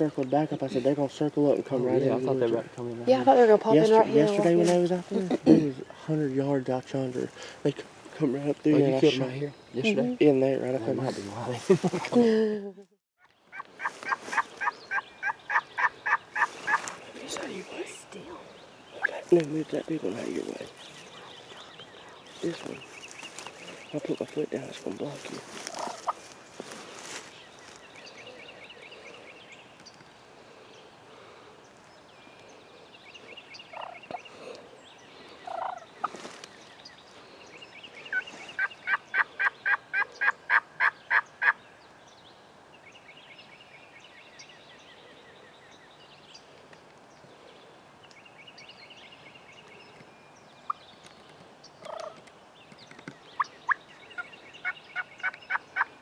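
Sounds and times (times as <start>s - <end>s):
wild turkeys yelping: 13.2s - 17.4s, 25.4s - 28.5s, 33.7s - 34.5s, 35.4s - 36.2s, 38.1s - 41.6s, 51.8s - 52.3s, 53.4s - 56.0s
low turkey calls: 13.2s - 17.6s, 18.2s - 29.3s, 33.2s - 36.6s, 37.8s - 41.6s, 51.8s - 52.3s, 53.3s - 56.0s.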